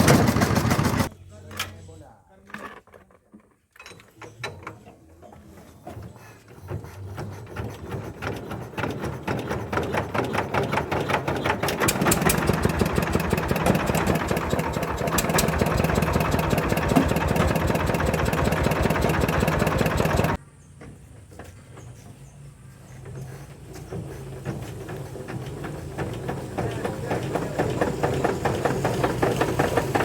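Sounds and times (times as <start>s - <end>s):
diesel engine running: 0.0s - 1.1s, 11.4s - 20.4s, 24.6s - 30.0s.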